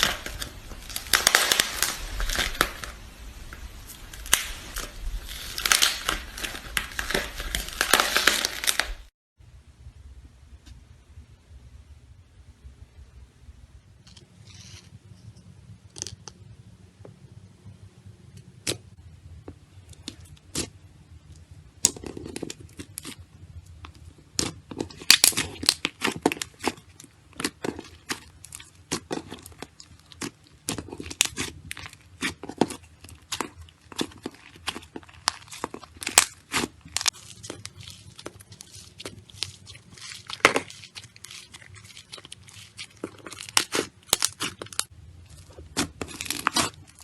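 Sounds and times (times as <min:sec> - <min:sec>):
slime crackling and popping: 0:00.0 - 0:09.1, 0:19.9 - 0:47.0.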